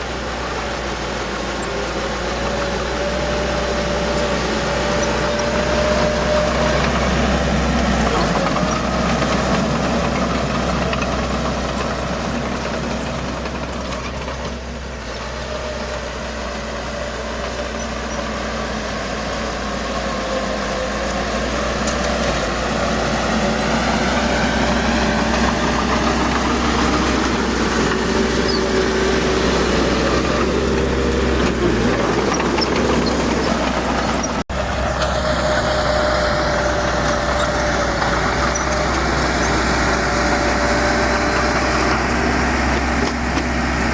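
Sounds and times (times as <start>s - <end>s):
heavy diesel engine running: 0.0s - 43.9s.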